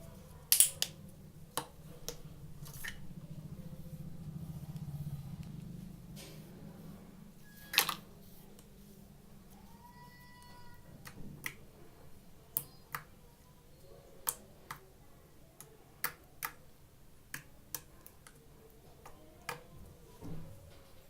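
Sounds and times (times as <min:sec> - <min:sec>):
slime clicking and popping: 0:00.5 - 0:02.2.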